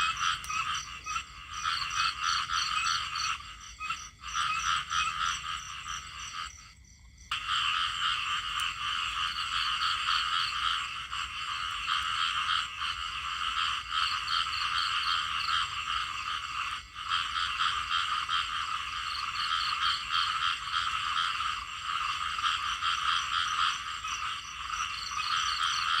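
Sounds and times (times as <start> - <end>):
chorus of frogs calling: 0.0 - 26.0.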